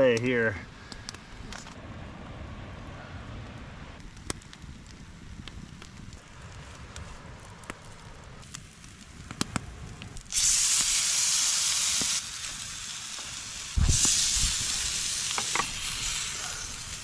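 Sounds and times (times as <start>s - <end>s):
food sizzling in a pan: 10.3s - 17.0s.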